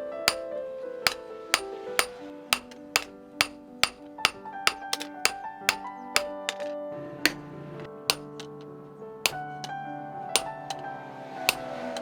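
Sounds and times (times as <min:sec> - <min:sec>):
hammer ringing on hot steel: 0:00.3 - 0:00.5, 0:01.1 - 0:06.7, 0:07.3 - 0:07.5, 0:08.1 - 0:08.6, 0:09.3 - 0:09.7, 0:10.4 - 0:10.8, 0:11.5 - 0:12.0
light hammer taps: 0:01.1 - 0:06.7, 0:08.1 - 0:08.6, 0:09.3 - 0:09.7, 0:10.4 - 0:10.8, 0:11.5 - 0:12.0.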